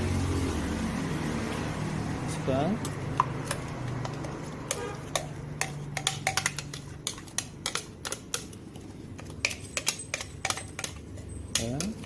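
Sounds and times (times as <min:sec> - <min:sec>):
utensil knocking against container: 0:02.8 - 0:08.5, 0:09.2 - 0:12.0.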